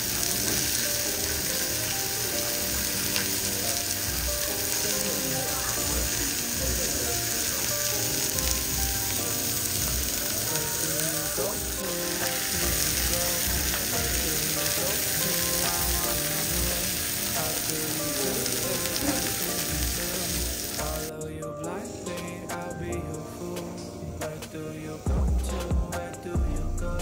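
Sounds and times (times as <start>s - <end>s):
meat sizzling on a grill: 0.0s - 21.1s.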